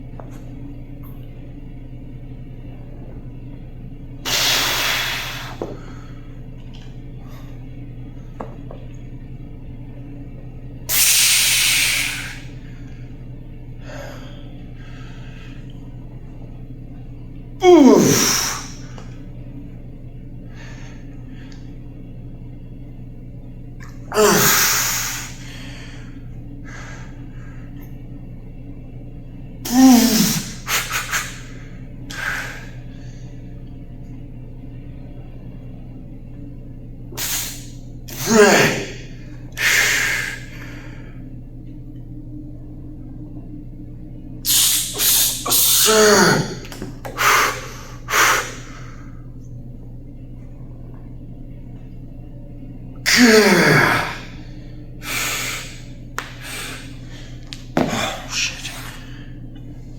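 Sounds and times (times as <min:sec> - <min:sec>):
man grunting with effort: 0:38.1 - 0:39.0, 0:45.8 - 0:46.7
man groaning: 0:38.1 - 0:39.1, 0:45.8 - 0:46.7, 0:53.1 - 0:54.3.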